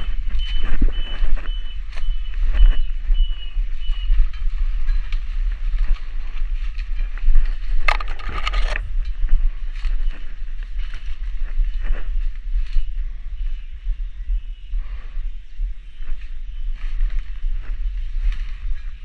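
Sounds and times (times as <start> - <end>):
high pulsing call: 0.0 - 6.5
footsteps: 0.0 - 19.0
rustling of leaves and branches: 0.0 - 19.0
steady low rumble: 0.0 - 19.0.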